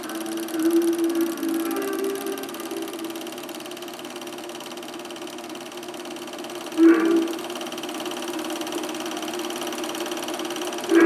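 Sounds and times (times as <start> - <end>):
soundtrack tone from speaker: 0.0 - 3.4, 6.8 - 7.6
film projector whirring and clattering: 0.0 - 11.0.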